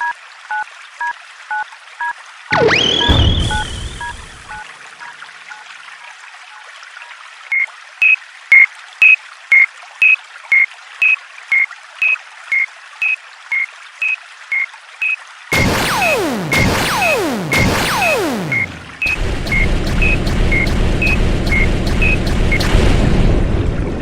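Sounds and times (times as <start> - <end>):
two-pitch electronic warning beeps: 2.5 - 4.6, 15.0 - 22.7
low hit: 2.6 - 4.5, 15.6 - 24.0.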